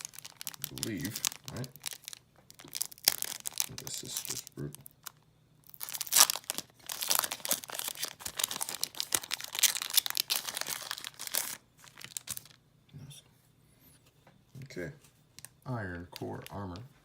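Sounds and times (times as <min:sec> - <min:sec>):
foil wrapper crinkling and tearing: 0:00.0 - 0:12.6.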